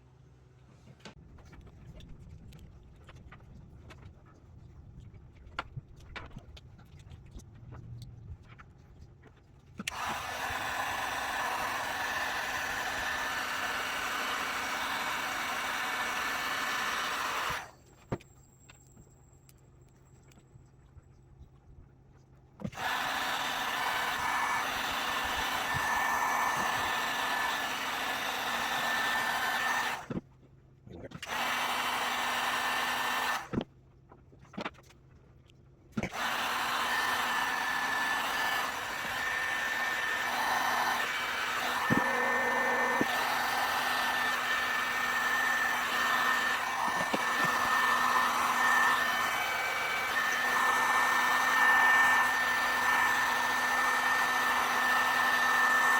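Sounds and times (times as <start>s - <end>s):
heat gun blowing: 9.9s - 17.7s, 22.7s - 30.1s, 31.2s - 33.6s, 36.0s - 55.9s.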